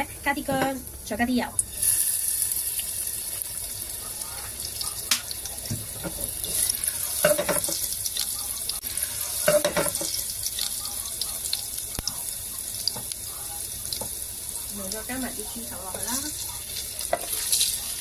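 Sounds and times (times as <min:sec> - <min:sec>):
tap water running into sink: 0:04.8 - 0:08.8, 0:09.4 - 0:10.6
kitchenware clattering: 0:05.1 - 0:07.9, 0:09.4 - 0:10.2.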